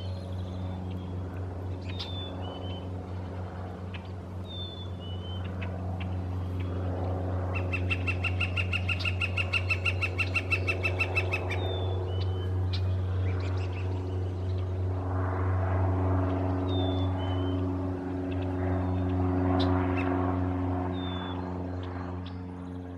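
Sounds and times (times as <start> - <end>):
woodpecker rapid wik calls: 7.5 - 12.3.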